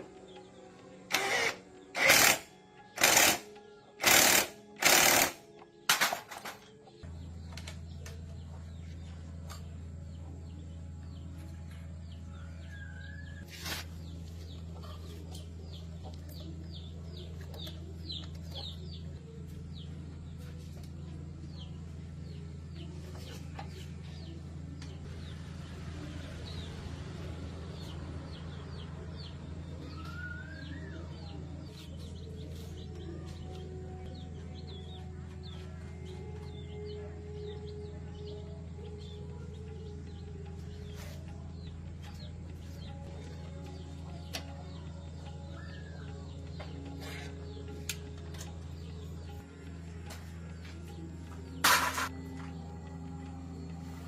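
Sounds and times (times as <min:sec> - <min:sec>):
workshop tool bursts: 0:01.1 - 0:06.4
low machine hum: 0:06.7 - 0:54.0
chickens clucking: 0:14.4 - 0:19.0.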